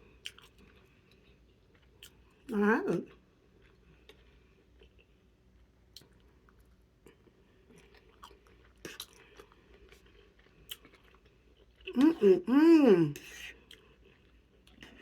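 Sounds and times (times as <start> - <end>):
chewing mouth sounds: 0.1 - 2.5, 5.9 - 12.1, 13.2 - 15.0.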